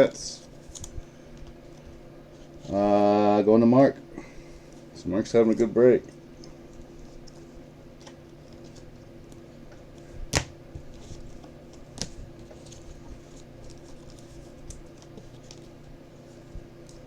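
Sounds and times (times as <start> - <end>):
steady low hum: 0.0 - 17.0
cards handled on a table: 8.0 - 17.0.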